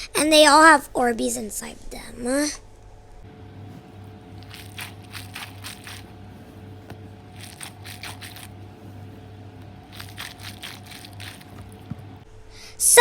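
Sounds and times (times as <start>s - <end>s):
squishy crunching of stress balls: 3.8s - 9.0s, 9.7s - 12.2s.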